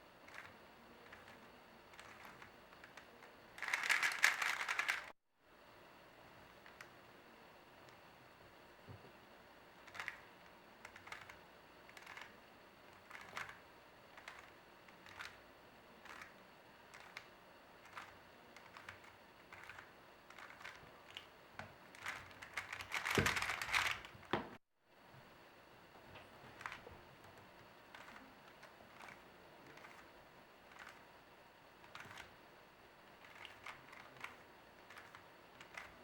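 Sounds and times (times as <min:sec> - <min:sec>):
plastic puzzle cube turning clicks: 0:00.3 - 0:05.0, 0:09.8 - 0:10.2, 0:10.8 - 0:12.3, 0:12.9 - 0:13.6, 0:14.2 - 0:15.4, 0:16.0 - 0:16.3, 0:16.9 - 0:21.3, 0:21.9 - 0:24.1, 0:26.5 - 0:26.8, 0:27.9 - 0:30.1, 0:30.7 - 0:31.0, 0:31.8 - 0:32.3, 0:33.2 - 0:36.0.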